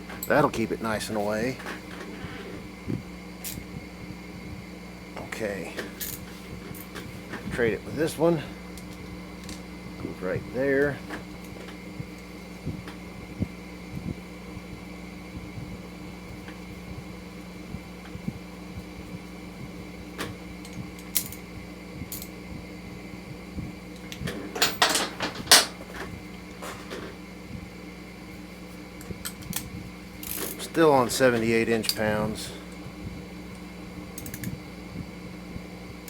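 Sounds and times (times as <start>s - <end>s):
fan humming: 0.0s - 36.0s
hand tools and bolts clicking: 34.2s - 34.5s.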